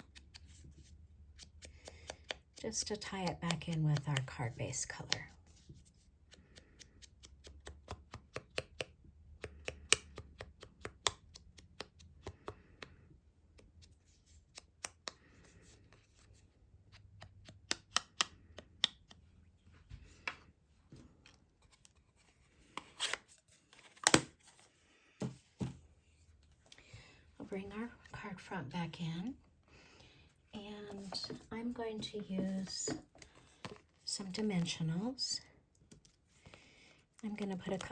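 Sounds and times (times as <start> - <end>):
sharp taps and clicks on paper: 1.2 - 5.3, 6.2 - 15.4, 16.9 - 19.3.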